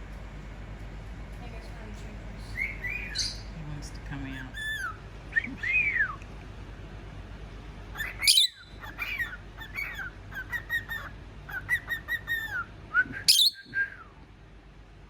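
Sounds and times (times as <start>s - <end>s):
sharp bird calls: 2.4s - 3.6s, 7.9s - 12.7s, 13.3s - 13.7s
cockatiel whistling and chirping: 8.0s - 13.9s.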